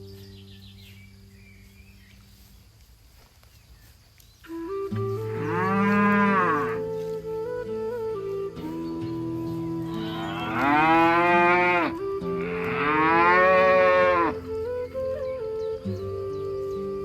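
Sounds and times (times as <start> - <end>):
background music notes: 0.0 - 2.7, 3.8 - 17.0
cow mooing: 5.3 - 6.8, 9.9 - 14.4.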